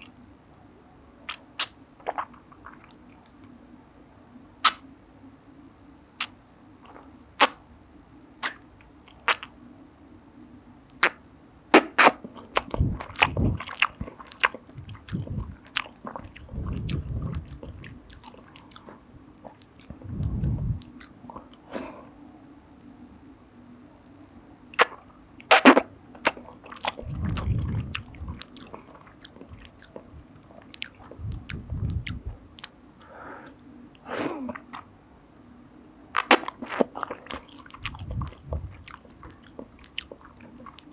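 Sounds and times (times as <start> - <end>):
chewing and wet mouth noises: 1.2 - 3.5, 8.4 - 9.6, 11.8 - 21.6, 24.8 - 32.8, 33.4 - 34.9, 35.7 - 40.9
sharp mouth clicks: 4.6 - 4.9, 11.8 - 21.6, 24.8 - 32.8, 36.2 - 40.2.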